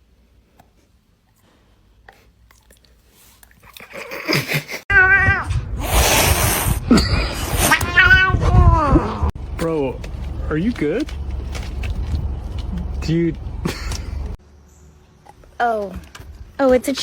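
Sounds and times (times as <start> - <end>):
animal hissing: 5.8 - 6.8.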